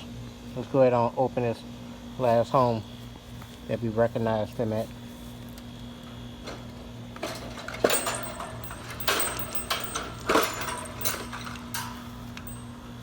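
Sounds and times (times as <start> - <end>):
steady low hum: 0.0 - 13.0
bird cage clicking and rattling: 6.5 - 12.8.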